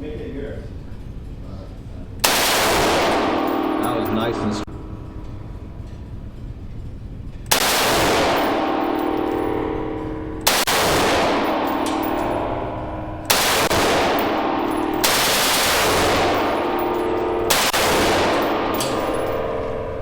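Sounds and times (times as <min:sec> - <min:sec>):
machine-gun fire: 0:02.2 - 0:04.3, 0:07.5 - 0:09.6, 0:10.4 - 0:19.8.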